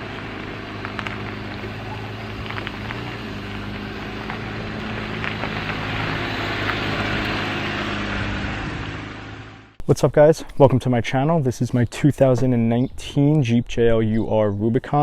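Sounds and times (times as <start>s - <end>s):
vehicle engine idling: 0.0s - 9.8s.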